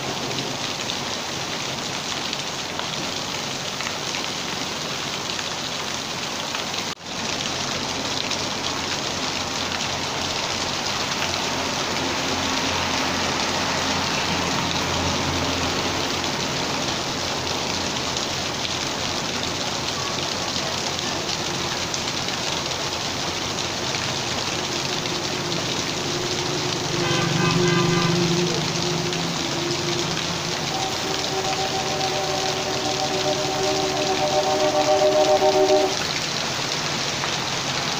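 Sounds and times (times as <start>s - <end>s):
rain on hard surfaces: 0.0s - 37.9s
low hum: 24.2s - 36.0s.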